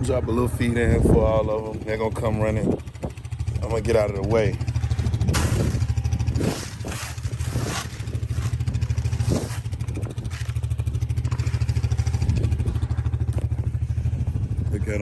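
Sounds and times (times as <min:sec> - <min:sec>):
engine idling: 0:00.0 - 0:15.0
scrapes and clatters: 0:05.3 - 0:11.9.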